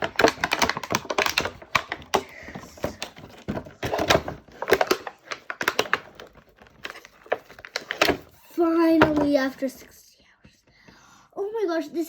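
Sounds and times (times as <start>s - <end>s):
plastic packaging crackling: 0.0s - 9.2s.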